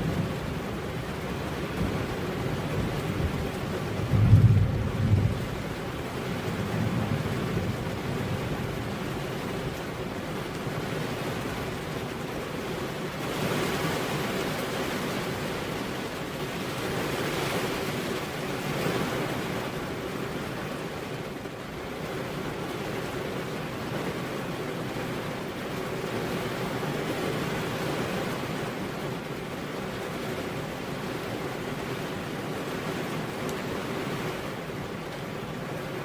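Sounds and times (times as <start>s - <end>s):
low rumble of thunder: 0.0s - 9.6s
steady rain: 0.0s - 36.0s.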